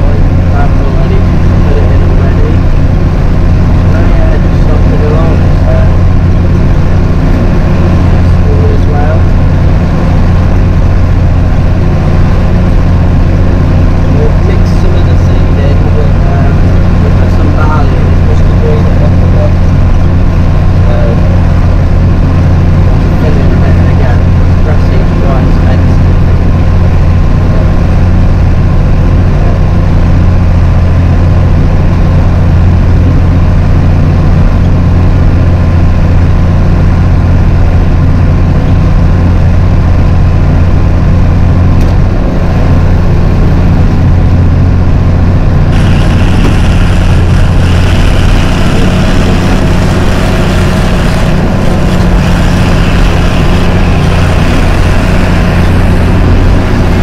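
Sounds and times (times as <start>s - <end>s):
tractor engine running: 0.0s - 57.0s.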